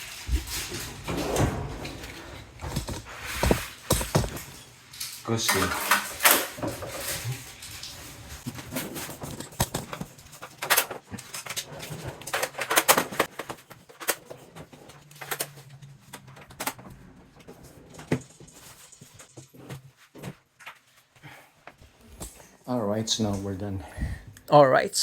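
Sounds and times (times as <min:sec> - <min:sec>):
cabinet panels clicking and knocking: 0:00.3 - 0:04.6.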